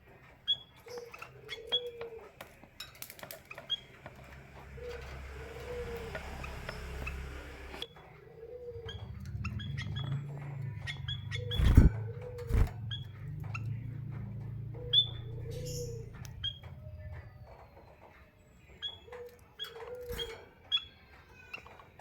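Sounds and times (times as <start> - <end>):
steady low hum: 3.8 - 7.8, 8.8 - 17.6
finches giving short high chirps: 10.8 - 13.0
loud thumps: 11.5 - 12.8.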